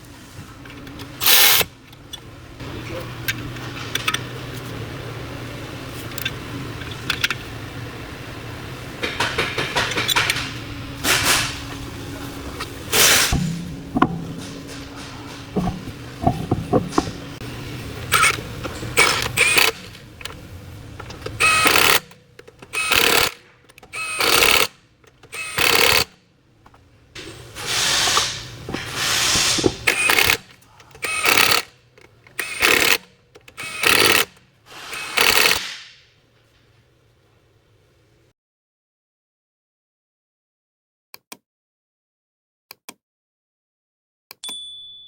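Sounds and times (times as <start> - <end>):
handling clicks and knocks: 13.4 - 20.4, 28.6 - 31.0
power tool bursts: 18.1 - 18.4, 19.0 - 19.9, 21.4 - 22.1, 22.7 - 24.7, 25.3 - 26.1, 27.2 - 31.7, 32.4 - 33.0, 33.6 - 36.0.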